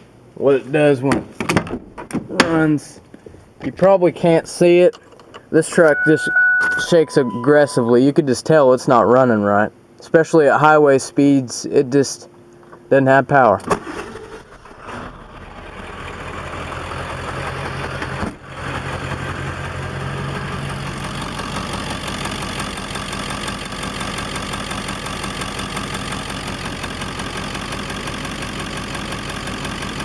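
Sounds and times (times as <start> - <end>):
diesel truck engine idling: 15.4 - 30.0.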